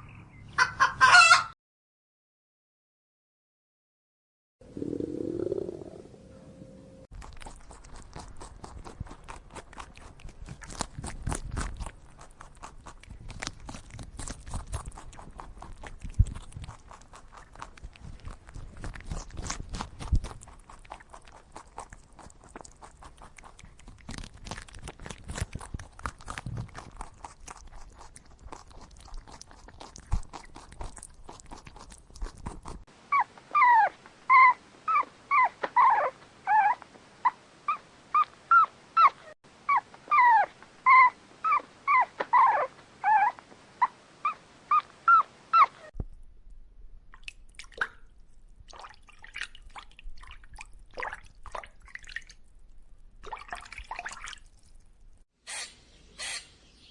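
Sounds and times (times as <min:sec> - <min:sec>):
crackling crunching noise: 0:07.2 - 0:32.9
dog yelping: 0:33.1 - 0:45.9.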